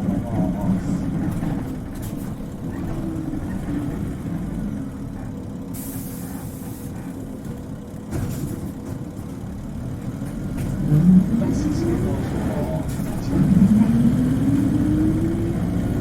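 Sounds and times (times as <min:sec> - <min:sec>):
diesel engine drone: 0:00.0 - 0:16.0
air brakes hissing: 0:05.7 - 0:07.1.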